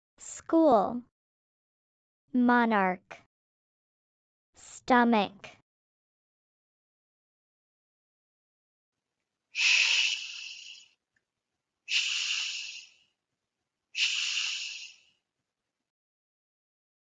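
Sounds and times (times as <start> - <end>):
person saying sh sound: 0.2 - 1.0, 9.6 - 10.9, 11.9 - 13.0, 14.0 - 15.1.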